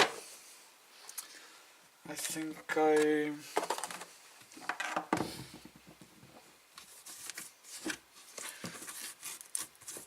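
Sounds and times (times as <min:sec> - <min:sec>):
rustling of small items: 0:02.1 - 0:10.0.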